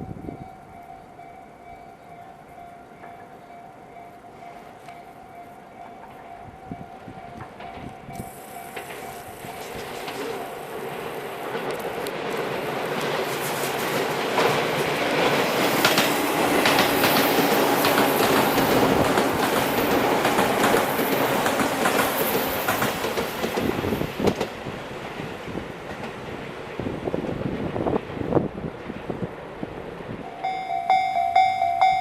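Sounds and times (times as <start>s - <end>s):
train wheels clattering over rail joints: 7.3s - 26.4s.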